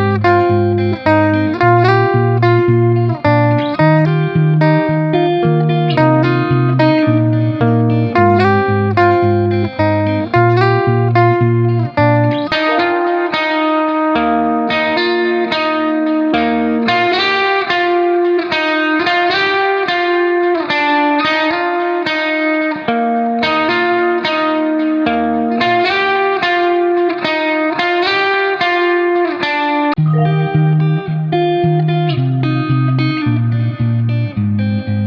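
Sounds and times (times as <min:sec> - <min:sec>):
bass line: 0:00.0 - 0:13.0, 0:30.0 - 0:31.5
plucked guitar pattern: 0:00.0 - 0:35.0.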